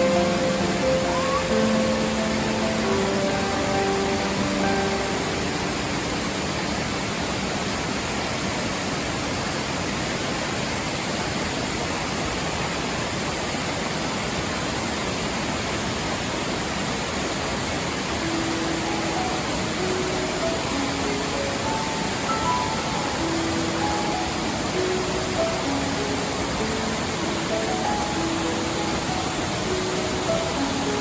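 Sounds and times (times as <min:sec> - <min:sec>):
soft music notes: 0:00.0 - 0:08.0, 0:18.1 - 0:31.0
waterfall rushing: 0:00.0 - 0:31.0.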